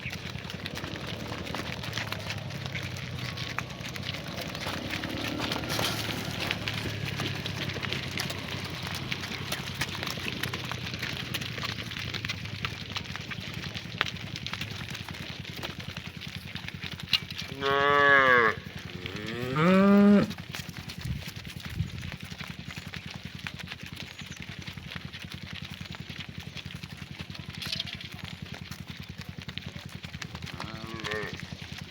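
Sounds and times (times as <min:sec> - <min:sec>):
cow mooing: 0:00.4 - 0:08.6, 0:17.5 - 0:20.4, 0:30.5 - 0:31.4.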